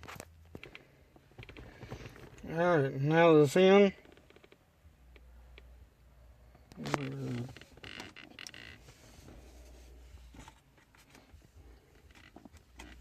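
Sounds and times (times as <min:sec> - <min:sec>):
clicks and rustles of parts handled: 0:00.0 - 0:02.5
low steady hum: 0:00.0 - 0:13.0.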